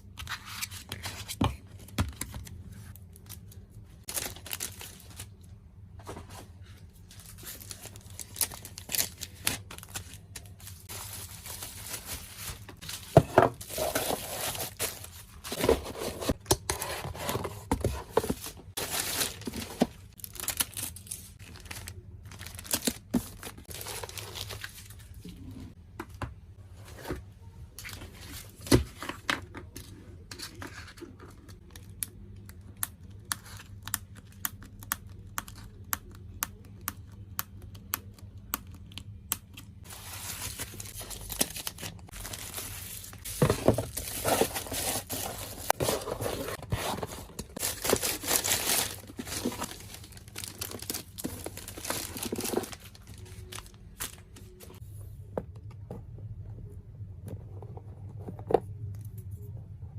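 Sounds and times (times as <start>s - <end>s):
packing material crinkling: 7.0s - 16.4s, 17.3s - 25.4s, 39.8s - 54.8s.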